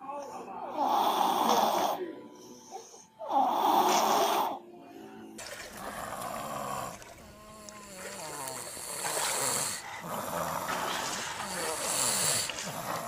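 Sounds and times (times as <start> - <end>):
baby snoring loudly: 0.7 - 2.0, 3.2 - 4.6, 5.7 - 13.0.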